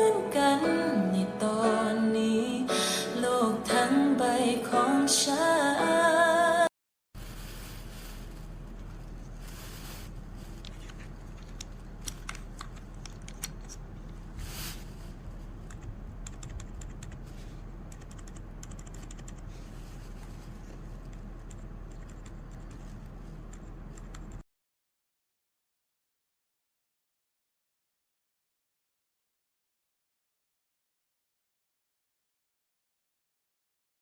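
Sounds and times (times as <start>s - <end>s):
steady low hum: 7.2s - 24.4s
keyboard keys clicking: 11.3s - 13.7s, 15.6s - 17.2s, 17.9s - 19.5s, 21.0s - 22.9s, 23.5s - 24.4s.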